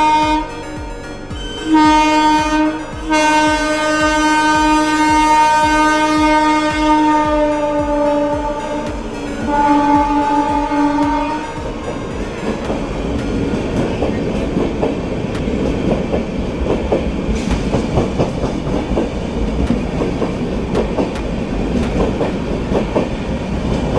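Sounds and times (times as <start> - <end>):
train horn: 0.0 - 12.8
train wheels clattering: 0.0 - 23.9.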